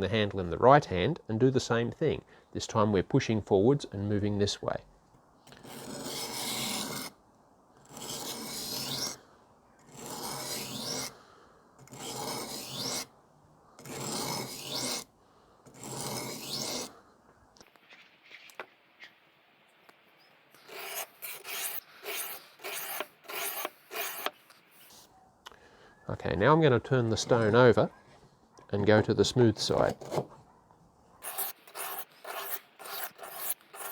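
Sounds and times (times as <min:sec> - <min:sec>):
knife grinding on sharpening stone: 0:07.9 - 0:09.2, 0:09.9 - 0:11.1, 0:11.9 - 0:13.1, 0:13.8 - 0:15.0, 0:15.7 - 0:16.9, 0:20.6 - 0:24.4, 0:31.2 - 0:33.9.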